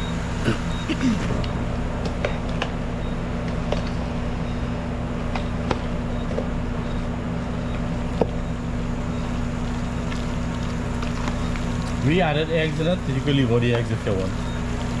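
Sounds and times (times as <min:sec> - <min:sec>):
low machine hum: 0:00.0 - 0:15.0.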